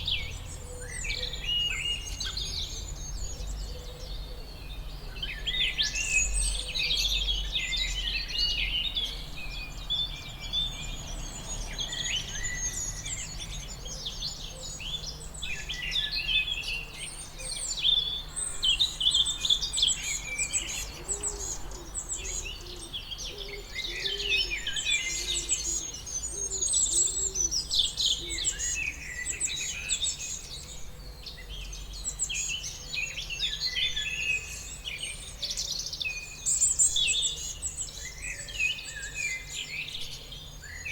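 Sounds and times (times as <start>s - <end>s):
songbirds chirping: 0.0s - 40.9s.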